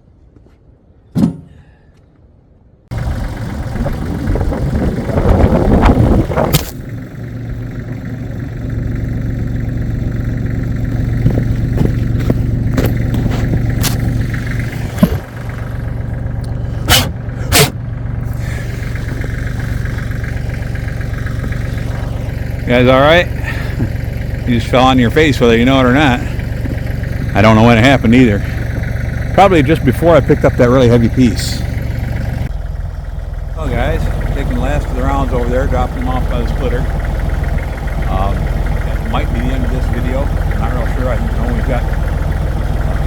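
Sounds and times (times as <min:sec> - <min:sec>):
engine knock: 0:02.9 - 0:43.0
tractor engine running: 0:02.9 - 0:43.0
sharp metal clanks: 0:16.8 - 0:17.8.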